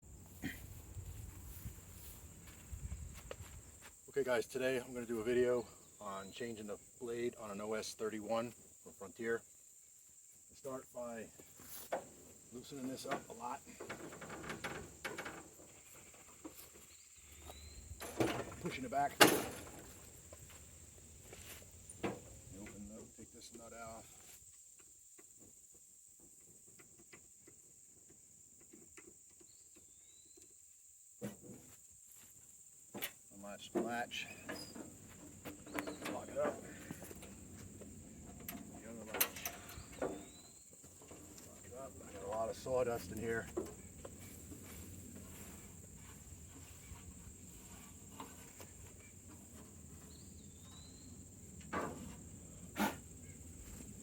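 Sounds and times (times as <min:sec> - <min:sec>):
light clicks of metal parts: 0:35.7 - 0:40.3.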